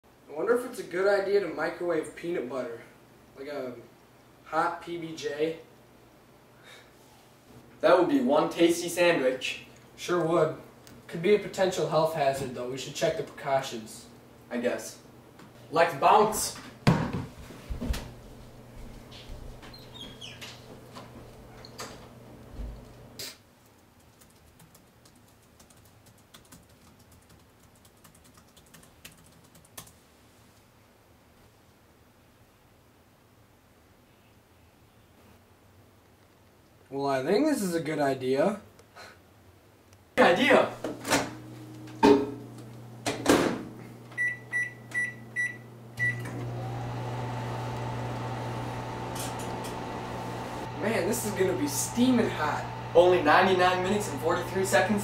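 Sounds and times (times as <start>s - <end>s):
faint microwave whine: 0.2s - 23.2s, 40.2s - 55.0s
keyboard typing: 23.6s - 30.0s
microwave oven humming: 40.5s - 55.0s
microwave keypad beeps: 44.2s - 46.3s.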